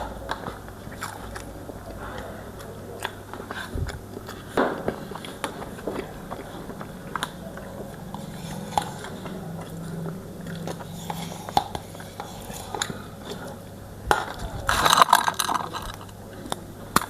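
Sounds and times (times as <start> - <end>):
person chewing food: 0.0 - 17.0.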